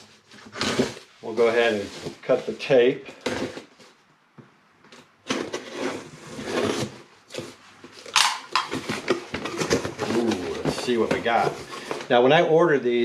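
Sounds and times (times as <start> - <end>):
cardboard box scraping and rustling: 0.0 - 2.6, 5.2 - 7.6, 8.8 - 12.2.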